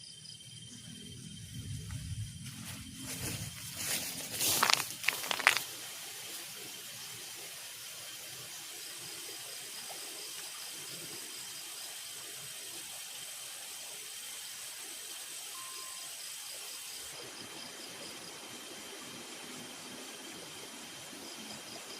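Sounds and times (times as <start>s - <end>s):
insects singing: 0.0s - 12.1s, 15.5s - 17.2s
water rushing in a stream: 4.0s - 21.9s.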